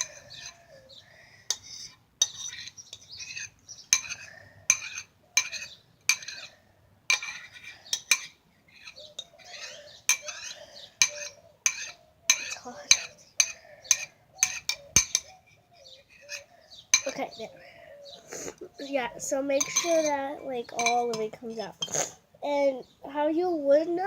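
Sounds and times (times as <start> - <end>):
spoon scraping a bowl: 0.0 - 0.8, 1.5 - 17.2, 19.5 - 22.2.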